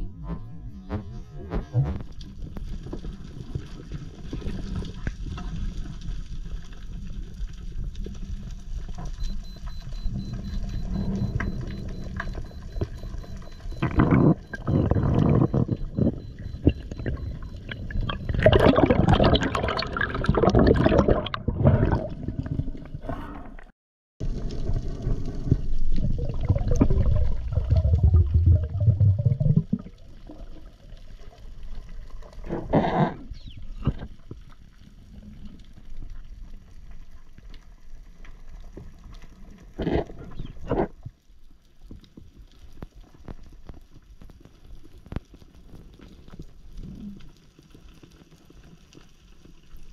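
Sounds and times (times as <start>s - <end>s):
water gurgling and rushing: 9.4s - 23.1s, 24.2s - 31.0s.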